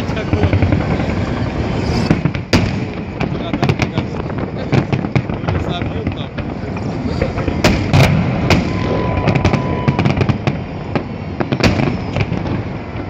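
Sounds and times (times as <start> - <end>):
crackling firework pops: 0.0 - 13.0
firework bangs: 0.0 - 13.0
thin firework whistle: 1.2 - 2.3, 8.4 - 13.0.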